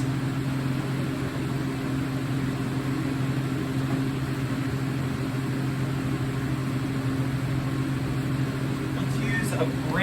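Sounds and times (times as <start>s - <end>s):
machine humming: 0.0s - 10.0s.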